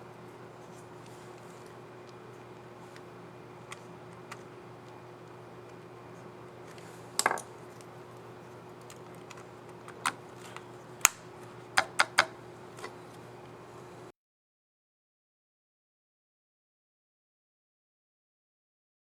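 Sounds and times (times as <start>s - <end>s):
faint steady hum: 0.0s - 14.1s
laptop keys clicking: 8.8s - 13.0s.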